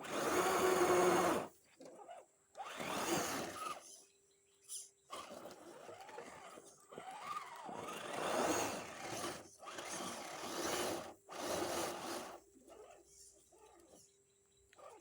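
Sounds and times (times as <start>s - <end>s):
electric motor whining in bursts: 0.0s - 1.5s, 2.6s - 3.8s, 5.2s - 13.0s.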